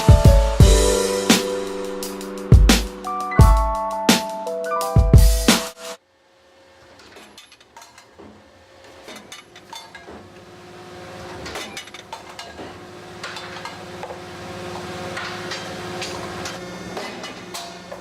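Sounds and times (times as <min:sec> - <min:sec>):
factory machinery hum: 0:10.4 - 0:18.0.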